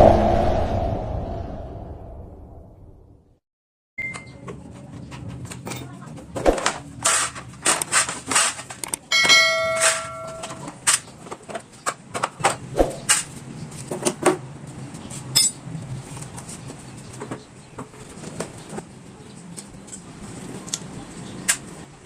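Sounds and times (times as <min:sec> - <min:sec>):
metal tools clinking and knocking: 0:07.1 - 0:11.1
metal piece ringing: 0:09.1 - 0:10.7.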